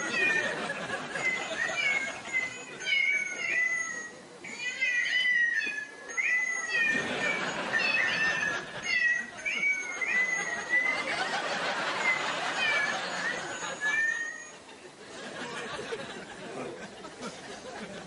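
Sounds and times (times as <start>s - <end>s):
cat meowing: 0.0s - 0.5s, 1.2s - 10.9s, 12.0s - 14.5s.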